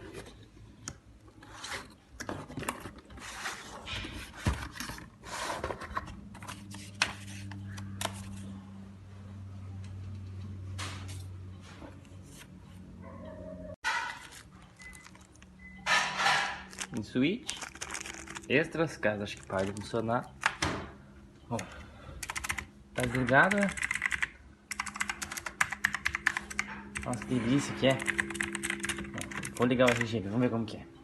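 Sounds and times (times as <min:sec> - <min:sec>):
rubbing and scraping handling noise: 0:00.0 - 0:08.7, 0:11.0 - 0:13.0, 0:13.8 - 0:20.0.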